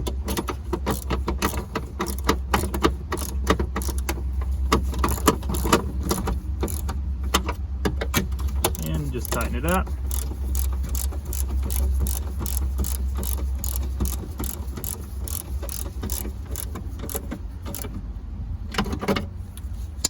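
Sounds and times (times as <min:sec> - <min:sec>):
ratchet wrench clicking: 0:00.0 - 0:07.5, 0:08.4 - 0:18.0.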